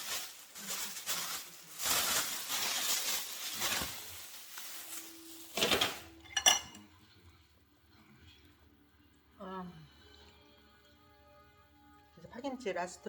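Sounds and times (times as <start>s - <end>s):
plastic wrapping crinkling: 0.0s - 6.2s.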